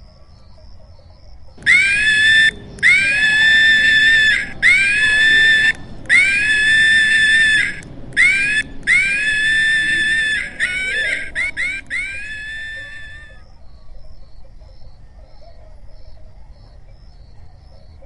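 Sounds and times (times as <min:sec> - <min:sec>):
animal screaming calls: 0:01.6 - 0:13.4.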